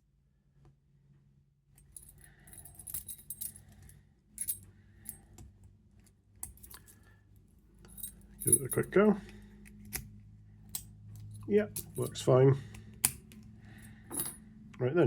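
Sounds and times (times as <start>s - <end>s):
keys jangling and clinking: 1.8s - 5.3s, 6.4s - 7.1s, 7.8s - 10.0s, 10.7s - 12.3s, 13.1s - 14.4s.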